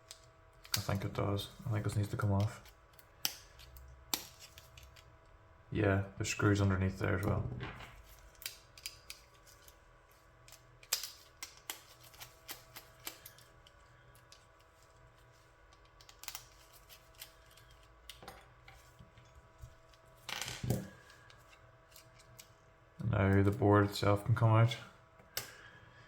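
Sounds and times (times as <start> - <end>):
faint steady hum: 0.0 - 26.0
small tools clicking on plastic: 8.2 - 9.8.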